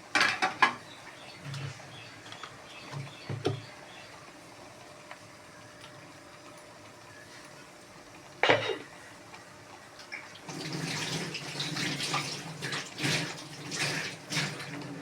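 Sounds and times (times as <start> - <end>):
water pouring: 10.1 - 15.0.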